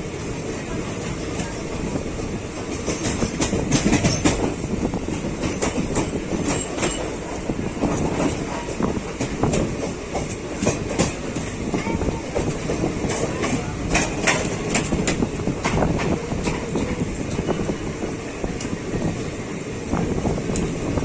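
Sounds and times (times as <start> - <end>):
train rumbling on rails: 0.0 - 21.0
wheels clicking over rail joints: 2.6 - 17.7.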